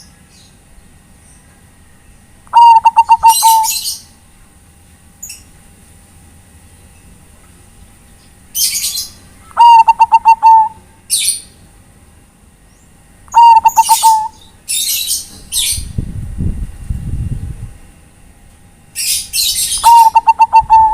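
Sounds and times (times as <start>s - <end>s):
dove cooing: 2.5s - 4.0s, 8.9s - 10.9s, 13.3s - 14.4s, 19.8s - 20.9s.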